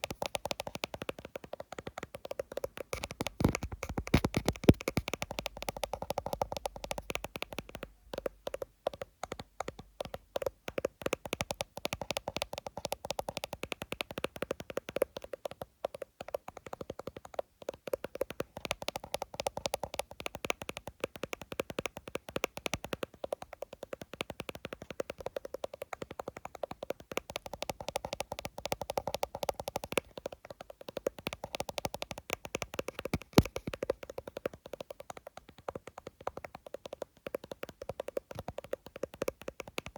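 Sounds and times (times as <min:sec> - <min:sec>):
fast tapping on phone screen: 0:00.0 - 0:39.9.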